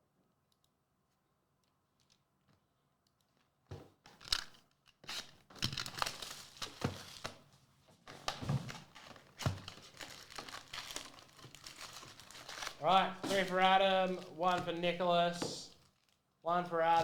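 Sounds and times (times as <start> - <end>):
packaging torn and crinkled: 5.1 - 7.4, 9.0 - 14.6.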